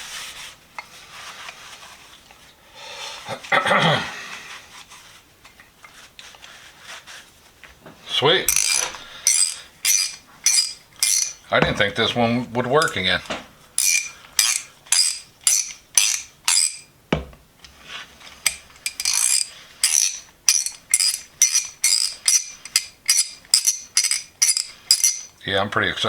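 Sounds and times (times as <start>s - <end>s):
ratchet wrench clicking: 8.5s - 11.4s, 13.8s - 16.8s, 18.4s - 25.3s.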